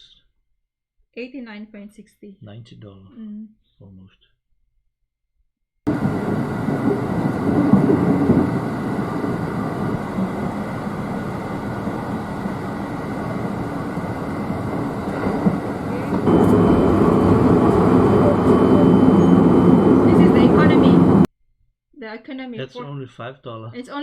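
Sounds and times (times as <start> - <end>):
train wheels rumbling on rails: 5.9 - 21.2.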